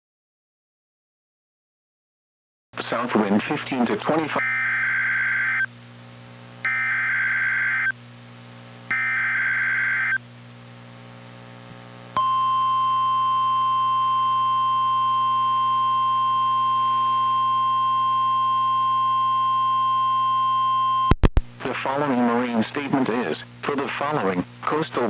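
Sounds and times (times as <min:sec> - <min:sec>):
steady alarm tone: 0:04.4 - 0:05.7, 0:06.7 - 0:07.9, 0:08.9 - 0:10.2, 0:12.2 - 0:21.1.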